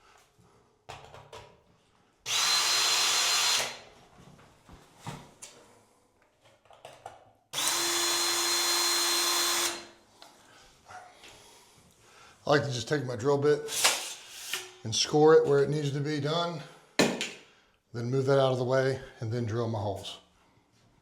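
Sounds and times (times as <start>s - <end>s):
power drill drilling through metal: 2.3s - 3.8s, 7.6s - 10.0s.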